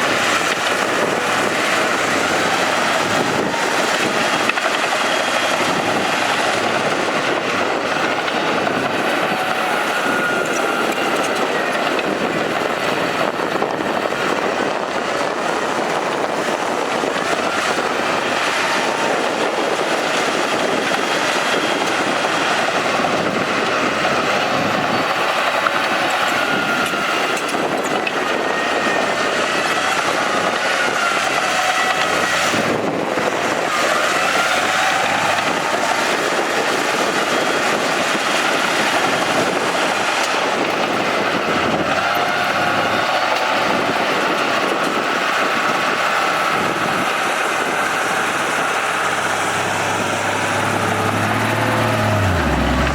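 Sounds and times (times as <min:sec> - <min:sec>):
bulldozer diesel engine under load: 0:00.0 - 0:52.9
steel tracks clanking: 0:00.0 - 0:52.9.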